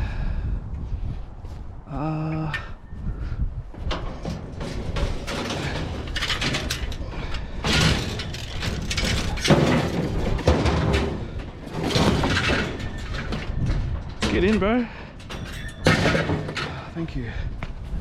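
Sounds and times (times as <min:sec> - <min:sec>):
scrap items knocking and clattering: 0:03.8 - 0:17.0.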